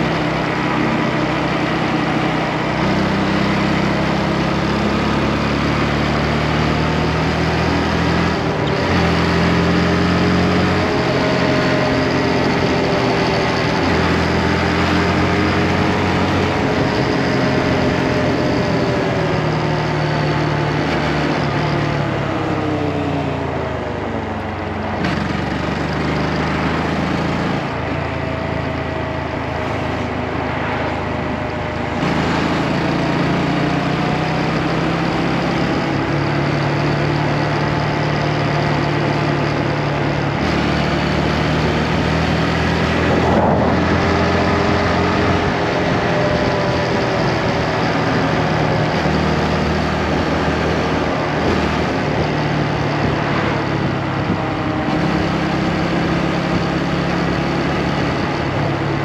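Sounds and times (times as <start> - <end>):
motorcycle engine running: 0.0 - 59.0
wind noise: 39.5 - 59.0.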